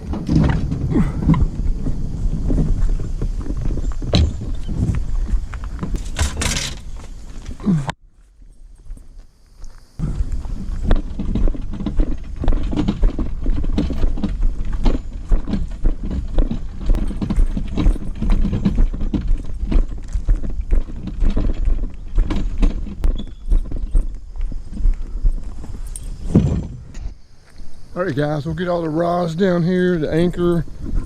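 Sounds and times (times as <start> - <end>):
fishing gear knocking and clattering: 0.0 - 7.6, 10.5 - 27.0
footsteps: 0.0 - 31.0.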